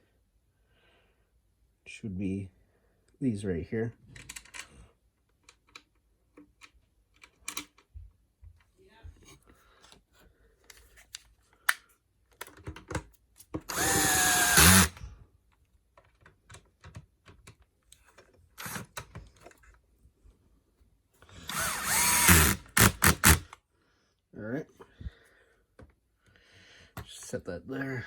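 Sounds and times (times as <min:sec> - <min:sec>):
power screwdriver motor whining: 0:13.7 - 0:15.1, 0:18.6 - 0:18.9, 0:21.3 - 0:23.5.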